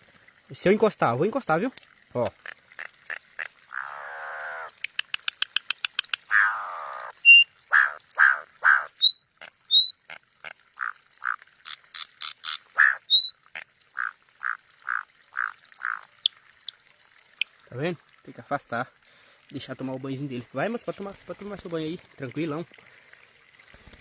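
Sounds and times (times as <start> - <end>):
bird harsh croaking calls: 2.4 - 4.8, 5.8 - 16.2
bird rasping call: 3.7 - 4.7, 6.3 - 9.9, 10.8 - 11.4, 12.2 - 13.3, 13.9 - 16.1
bird clicking rattle: 4.8 - 6.5.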